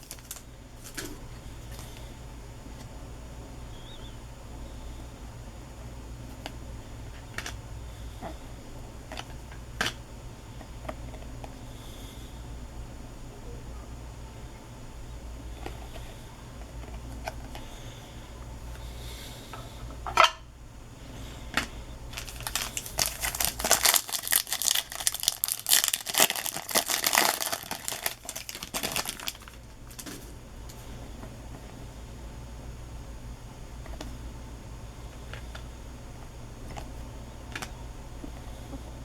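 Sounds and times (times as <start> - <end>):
wrapper crinkling and tearing: 0.0 - 1.0, 22.1 - 30.2
wrapper snapping: 0.0 - 1.1, 22.1 - 30.2.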